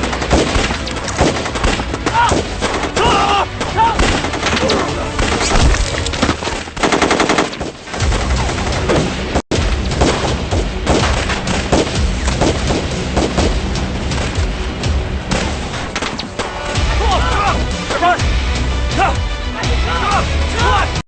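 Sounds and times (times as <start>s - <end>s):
rifle and machine-gun fire: 0.0s - 14.5s.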